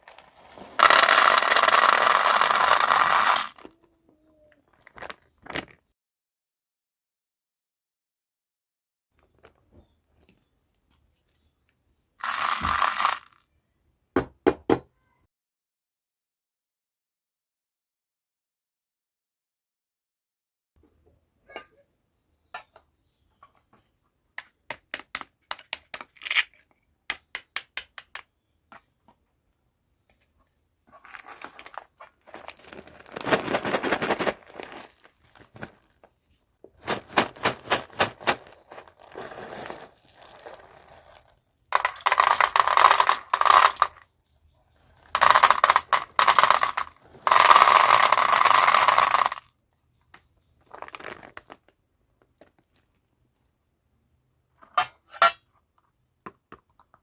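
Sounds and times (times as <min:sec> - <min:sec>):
wrapper crinkling and tearing: 0:00.0 - 0:03.7, 0:12.2 - 0:13.4, 0:31.0 - 0:36.1, 0:36.8 - 0:44.0, 0:45.0 - 0:49.4.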